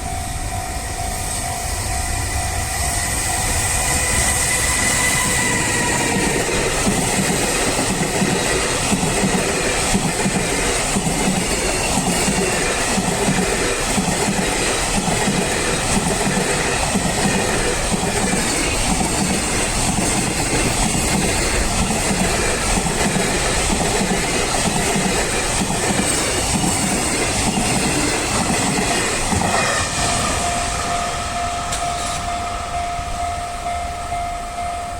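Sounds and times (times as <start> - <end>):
wheels clicking over rail joints: 5.0 - 30.2
level crossing warning tone: 29.9 - 34.9.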